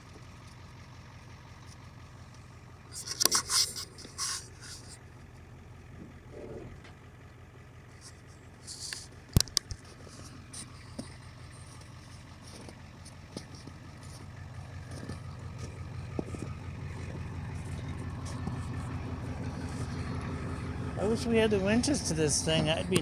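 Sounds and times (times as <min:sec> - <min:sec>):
truck engine rumbling: 0:00.0 - 0:23.0
faint clicks and knocks: 0:07.9 - 0:20.8.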